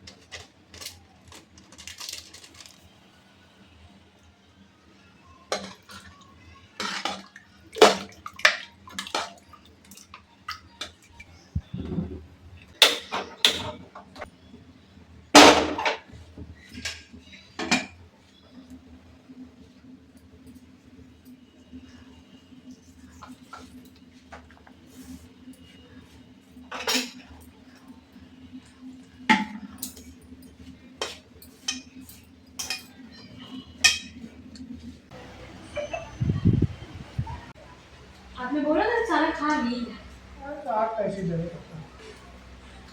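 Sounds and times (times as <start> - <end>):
metal utensils and pots clattering: 0.0 - 2.9, 5.5 - 11.2, 11.8 - 14.3, 15.4 - 18.0, 23.1 - 27.8, 29.2 - 34.4.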